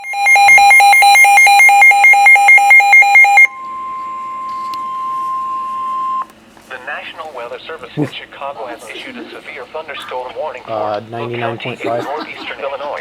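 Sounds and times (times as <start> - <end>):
rapid alarm beeping: 0.0 - 6.3
steady warning alarm tone: 0.0 - 6.5.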